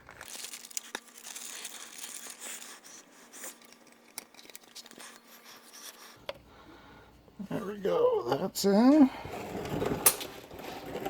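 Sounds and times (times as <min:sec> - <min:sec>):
rustling and scraping: 0:00.0 - 0:06.3, 0:09.1 - 0:11.0.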